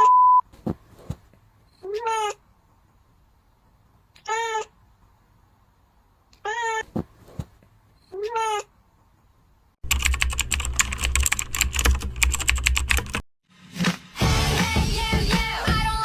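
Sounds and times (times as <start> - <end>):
cat meowing: 4.2 - 4.7, 6.4 - 6.8
keyboard typing: 9.8 - 13.2
music: 13.5 - 16.0.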